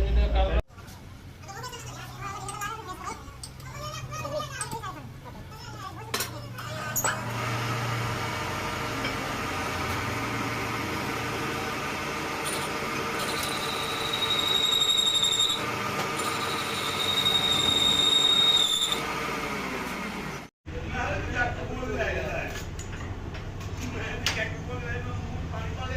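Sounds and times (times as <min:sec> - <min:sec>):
machine running: 0:07.2 - 0:20.5
high thin squeal: 0:12.5 - 0:15.6, 0:16.2 - 0:19.1.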